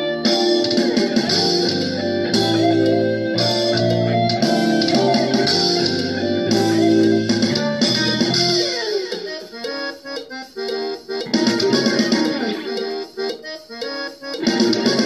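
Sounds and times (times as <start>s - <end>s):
bass: 0.0s - 8.8s, 11.2s - 12.4s
electric guitar: 0.0s - 9.6s, 11.1s - 13.4s, 14.3s - 15.0s
drums: 0.0s - 15.0s
keyboard: 0.0s - 15.0s.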